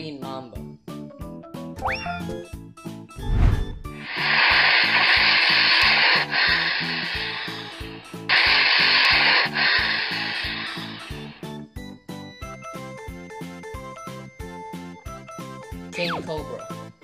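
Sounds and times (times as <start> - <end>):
low thud: 3.2 - 4.0
snake hissing: 3.8 - 11.5.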